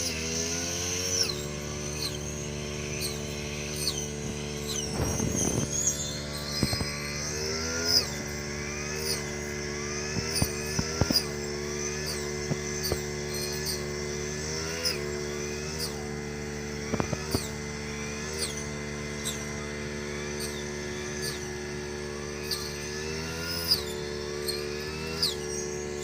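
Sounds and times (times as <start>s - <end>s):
brush cutter engine running: 0.0s - 26.0s
ticks and snaps of cutting stalks: 2.8s - 13.8s, 16.8s - 17.6s.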